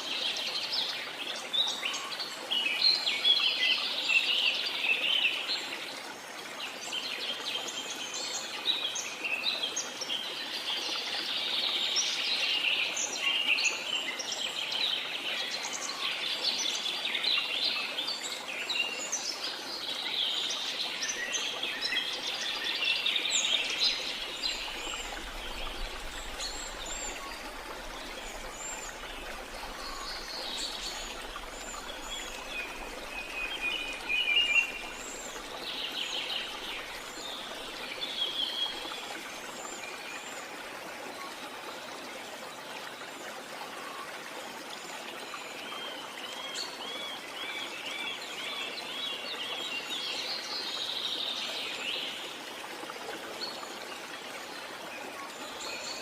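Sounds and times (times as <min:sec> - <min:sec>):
faint steady hiss: 0:00.0 - 0:56.0
chorus of birds chirping: 0:20.7 - 0:39.1.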